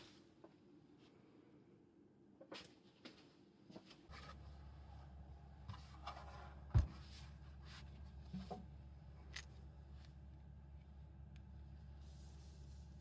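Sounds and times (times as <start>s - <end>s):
steady low hum: 4.1s - 13.0s.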